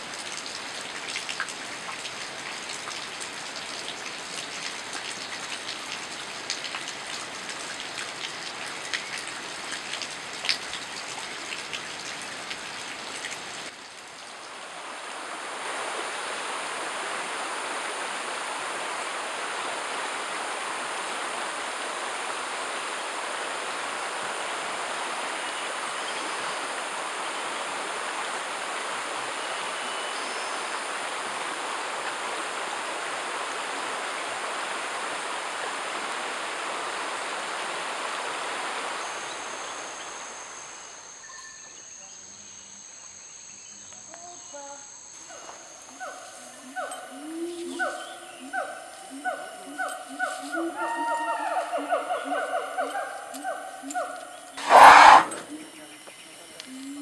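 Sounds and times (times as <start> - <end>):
rain falling: 0.0 - 40.5
running water rushing: 0.0 - 40.8, 54.6 - 55.6.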